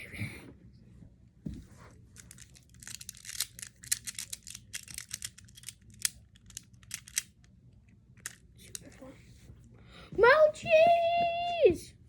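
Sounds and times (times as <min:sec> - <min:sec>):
magnetic fidget toy clicking: 0:02.9 - 0:07.3.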